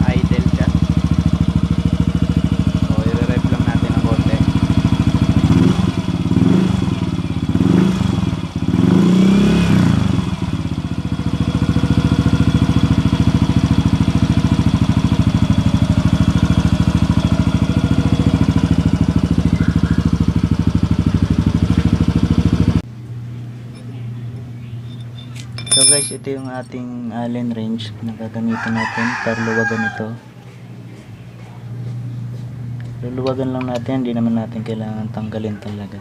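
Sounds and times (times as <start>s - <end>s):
scooter engine revving and idling: 0.0s - 22.8s.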